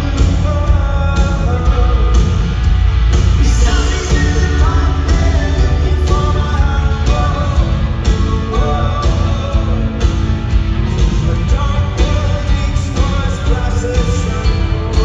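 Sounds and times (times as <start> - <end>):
rock band playing live: 0.0 - 15.0
person singing: 3.4 - 10.3, 11.0 - 15.0.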